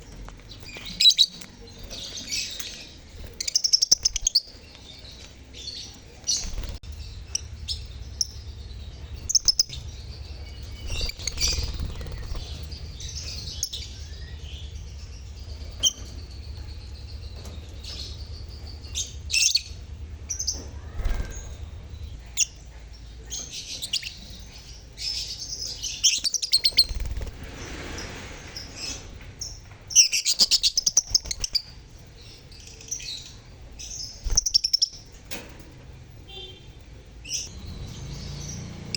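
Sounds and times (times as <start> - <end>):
faint low rumble: 0.0 - 35.3
birds chirping and chattering: 0.0 - 38.9.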